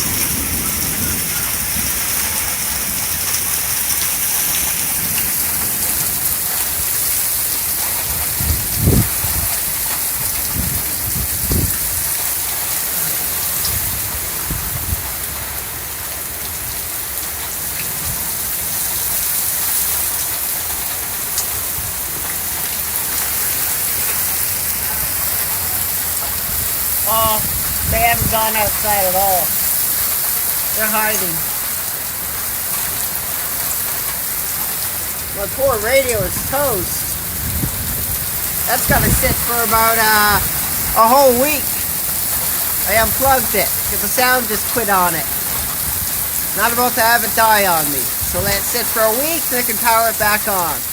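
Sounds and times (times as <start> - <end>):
low thunder rumbles: 0.0 - 12.5, 21.6 - 30.8, 33.2 - 41.0
heavy rain pouring: 0.0 - 50.9.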